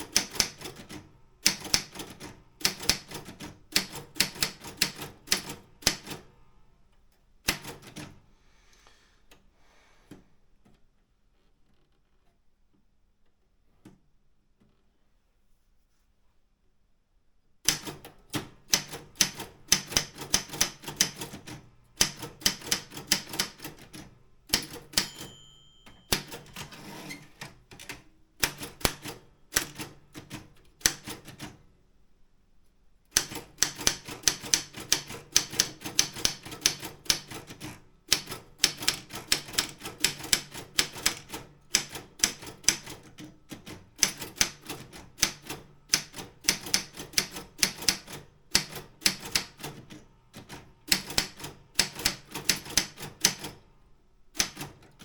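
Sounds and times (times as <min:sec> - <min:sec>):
typewriter keystrokes: 0:00.0 - 0:06.2, 0:07.5 - 0:08.2, 0:17.7 - 0:31.6, 0:33.1 - 0:53.6, 0:54.4 - 0:55.0
typewriter margin bell ring: 0:24.6 - 0:27.4.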